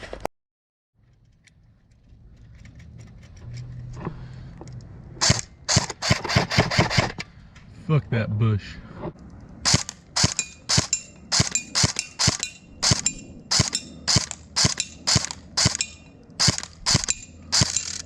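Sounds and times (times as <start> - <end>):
airsoft gun shots: 5.2 - 7.2, 9.6 - 18.0.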